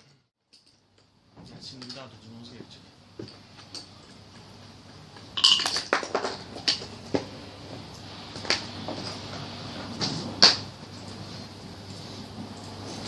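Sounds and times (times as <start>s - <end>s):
faint steady hum: 0.0s - 13.0s
small hard objects clinking: 5.2s - 7.1s.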